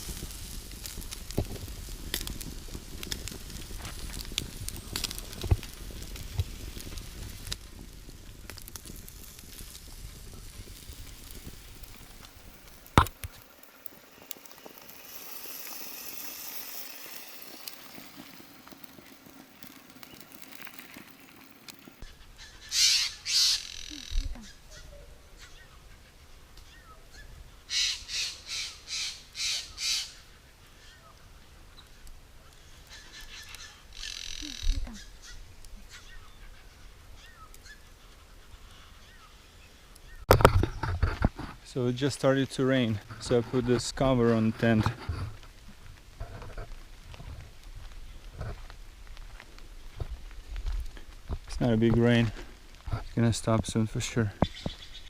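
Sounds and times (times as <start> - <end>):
sharp fire pops: 0.0 - 22.0
food sizzling over fire: 0.0 - 24.7, 26.8 - 55.0
campfire crackling: 0.0 - 55.0
small birds chirping: 10.4 - 40.2, 54.0 - 55.0.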